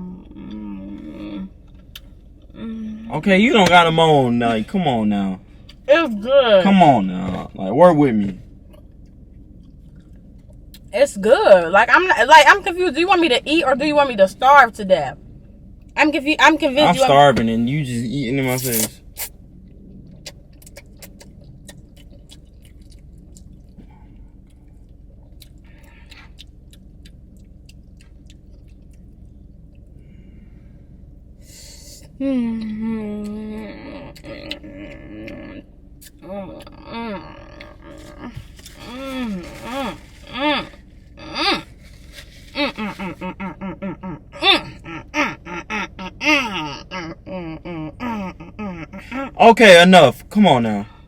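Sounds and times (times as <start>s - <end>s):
person chewing with wet smacking: 19.2s - 30.0s
person making pitched vocal noises: 32.9s - 41.7s, 42.6s - 49.5s.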